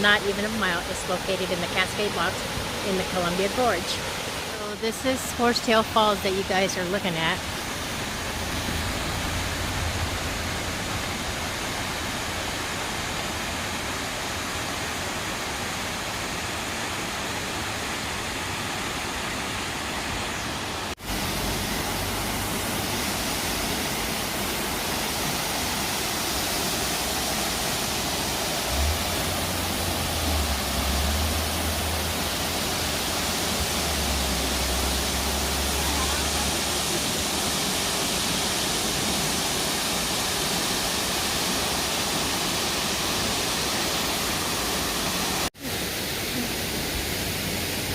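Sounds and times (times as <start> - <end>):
waterfall rushing: 0.0 - 47.9
low rumbling: 7.4 - 13.2, 27.8 - 36.8.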